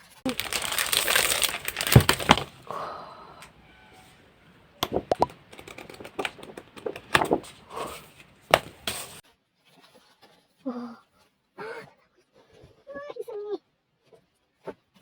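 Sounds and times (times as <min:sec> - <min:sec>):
hands handling packaging: 0:00.2 - 0:03.6, 0:04.8 - 0:09.2
packaging rustling: 0:00.2 - 0:03.6, 0:04.8 - 0:09.2.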